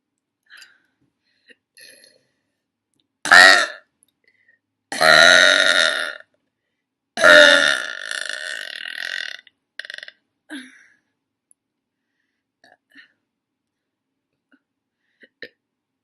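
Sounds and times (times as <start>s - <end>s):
woman burping loudly: 3.2s - 3.8s, 4.9s - 6.2s, 7.2s - 10.7s.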